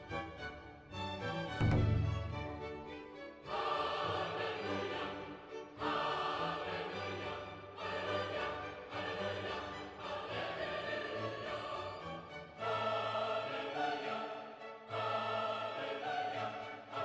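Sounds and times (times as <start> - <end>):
orchestral strings: 0.0 - 17.0
choir-like voices: 2.6 - 17.0.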